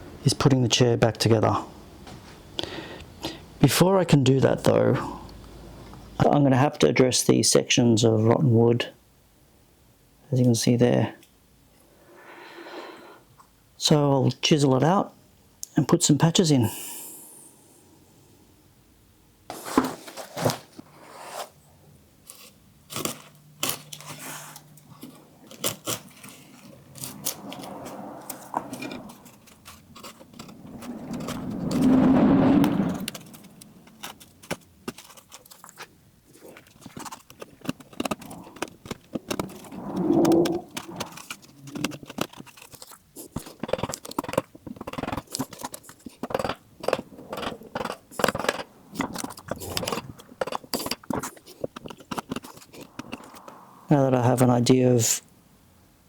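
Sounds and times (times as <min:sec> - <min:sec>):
wood chisel scraping wood: 0:25.5 - 0:53.5.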